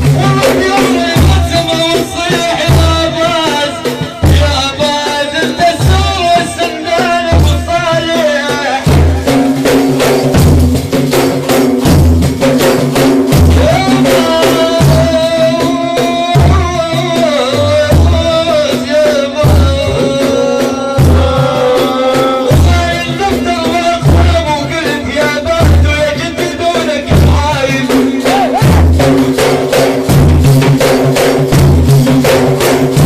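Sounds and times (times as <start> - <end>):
drum jingles: 0.0 - 33.0
frame drums beating: 0.0 - 33.0
group chanting with lead singer: 28.0 - 29.0.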